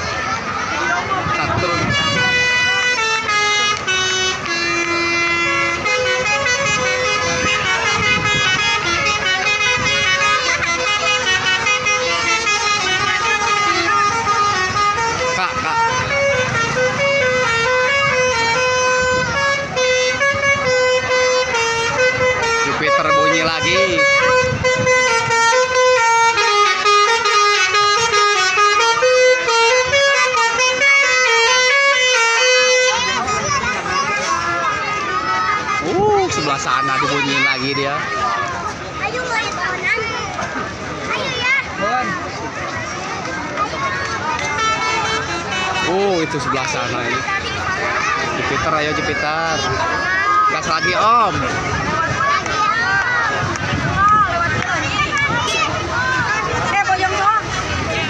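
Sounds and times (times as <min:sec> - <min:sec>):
musical air horns playing melodies: 0:00.4 - 0:37.6, 0:43.2 - 0:50.8.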